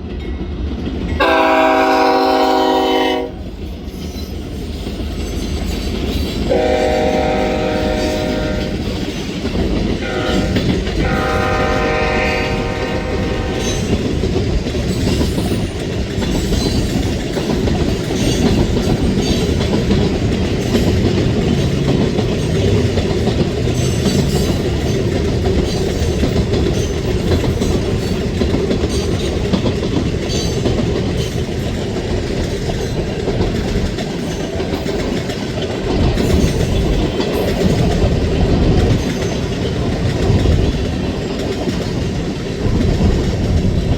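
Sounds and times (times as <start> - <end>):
freight train cars rolling past: 0.0 - 43.9
train horn chord: 1.2 - 3.4, 6.5 - 8.8, 10.0 - 13.9.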